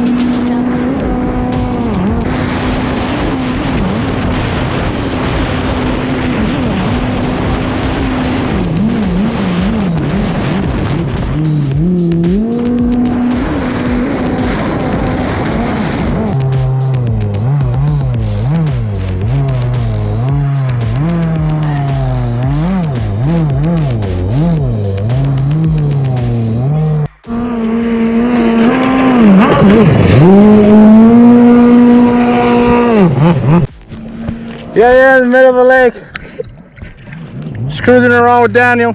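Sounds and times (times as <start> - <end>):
rush of water and wind: 0.0 - 11.6
jet ski engine running hard: 0.0 - 35.0.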